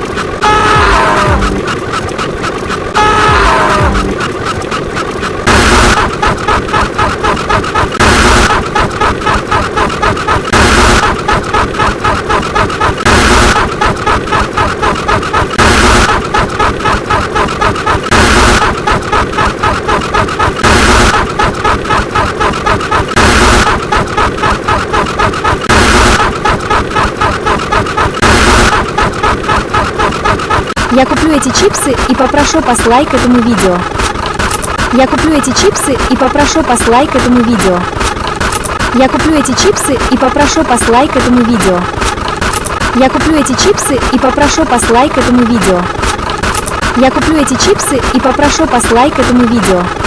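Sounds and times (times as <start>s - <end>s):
fast pulsing beat: 0.0s - 50.0s
explosion-like bursts: 5.4s - 6.2s, 8.0s - 8.7s, 10.5s - 11.2s, 13.0s - 13.8s, 15.5s - 16.2s, 18.1s - 18.9s, 20.6s - 21.4s, 23.1s - 23.8s, 28.2s - 28.9s.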